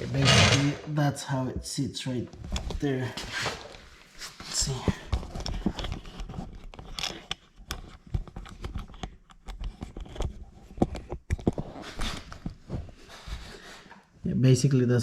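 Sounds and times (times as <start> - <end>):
parts clicking and scraping: 0.0 - 0.9.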